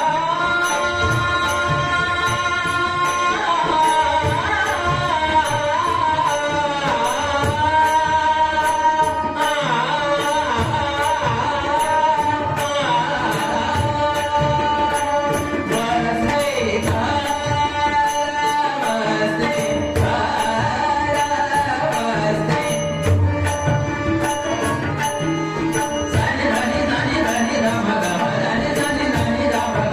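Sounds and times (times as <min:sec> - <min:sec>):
percussion beat with low drums: 0:00.0 - 0:29.9.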